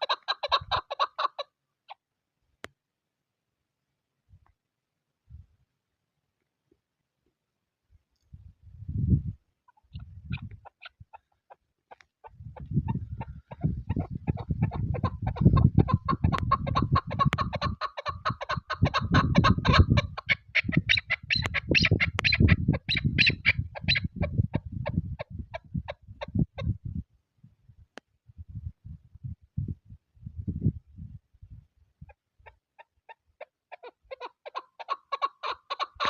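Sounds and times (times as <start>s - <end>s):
partridge clucking calls: 0.0s - 2.0s, 9.7s - 26.7s, 32.1s - 36.0s
wind rumbling on microphone: 5.2s - 5.6s, 8.2s - 11.2s, 12.2s - 32.5s.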